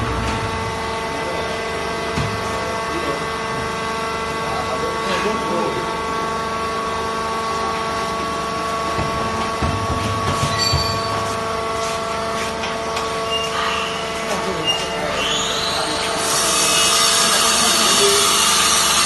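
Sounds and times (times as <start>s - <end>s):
knocks and clanks: 8.9s - 11.5s.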